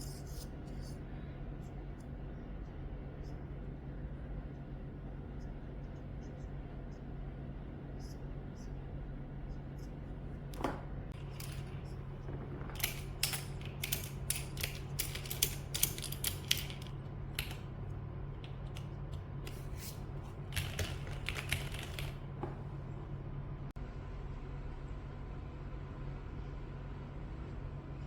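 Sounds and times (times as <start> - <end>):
steady low hum: 0.0 - 28.0
mechanical keyboard keys clacking: 12.7 - 17.6, 20.5 - 22.2.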